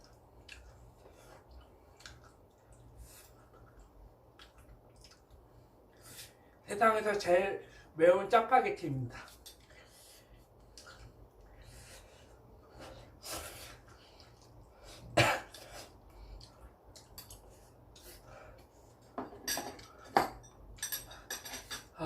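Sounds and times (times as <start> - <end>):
man coughing: 15.1 - 15.6.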